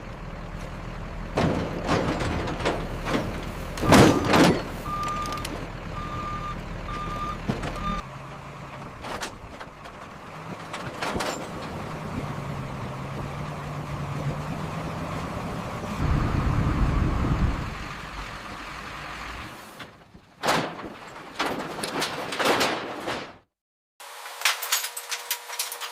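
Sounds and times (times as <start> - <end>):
truck idling: 0.0 - 20.4
clanks and knocks: 1.3 - 5.6, 8.8 - 12.2, 19.8 - 23.5
reversing alarm beeping: 3.8 - 8.0.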